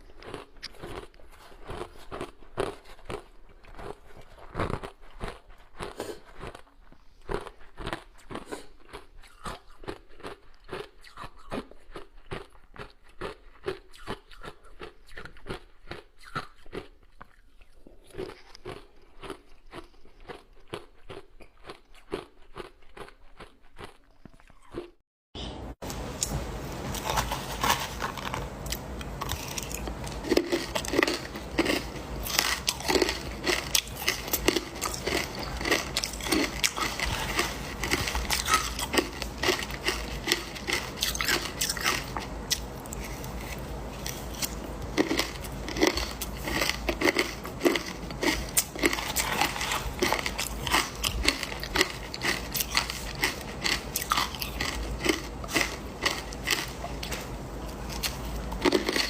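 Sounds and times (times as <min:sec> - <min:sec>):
person crunching ice: 0:27.0 - 0:57.2.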